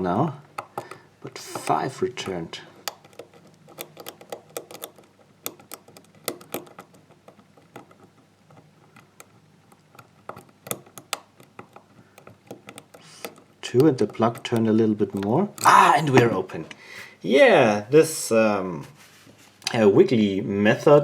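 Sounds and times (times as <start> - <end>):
lock pick clicking: 0.0 - 16.2.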